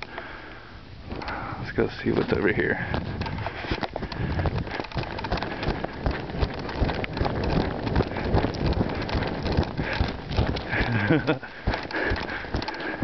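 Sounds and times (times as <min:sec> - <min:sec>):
footsteps crunching through icy snow: 0:02.3 - 0:13.0
wind on microphone: 0:02.7 - 0:13.0.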